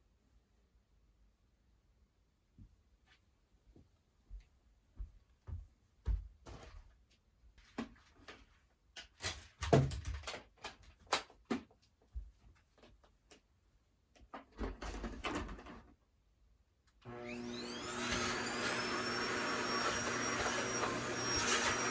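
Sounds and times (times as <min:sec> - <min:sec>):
vacuum cleaner motor whine: 0:17.0 - 0:21.9.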